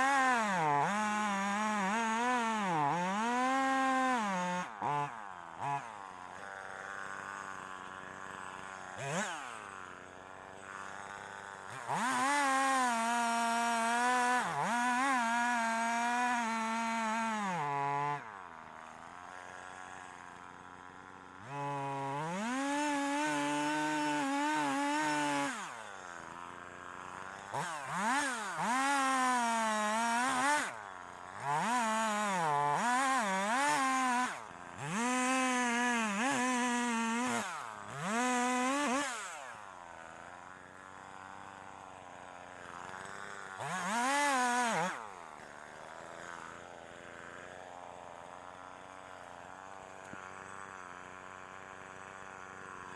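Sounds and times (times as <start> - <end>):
chainsaw cutting wood: 0.0 - 52.9.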